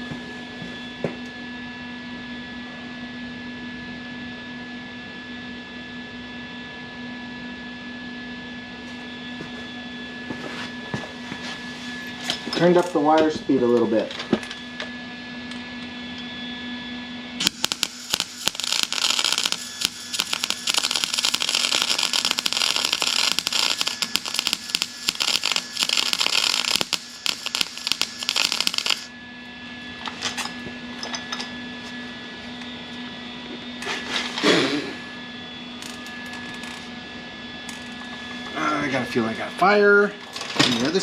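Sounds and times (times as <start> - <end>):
steady low hum: 8.2 - 40.3
welding arc crackle: 17.4 - 29.1.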